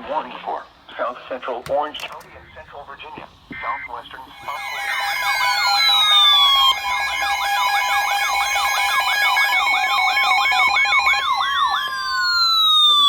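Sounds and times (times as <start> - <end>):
electronic siren alert tone: 4.3 - 13.0.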